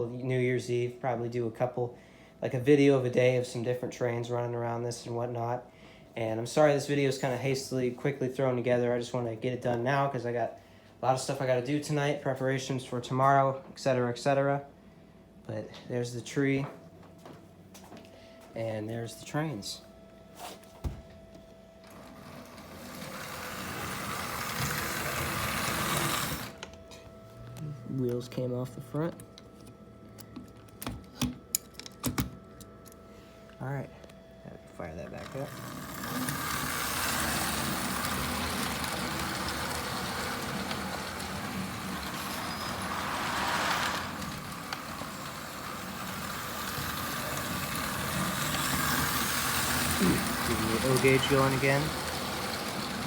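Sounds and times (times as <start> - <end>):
toy train motor whirring: 21.8 - 26.6, 35.2 - 53.0.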